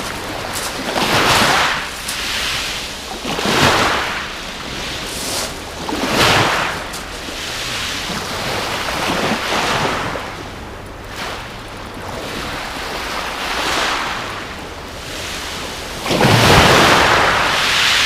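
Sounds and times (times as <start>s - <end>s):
waves breaking on shingle: 0.0s - 10.0s, 15.1s - 18.0s.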